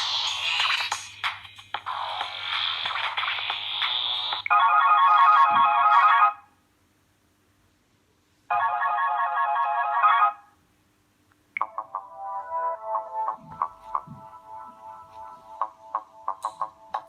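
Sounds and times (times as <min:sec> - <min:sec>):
electronic warbling ringtone: 0:02.0 - 0:06.5.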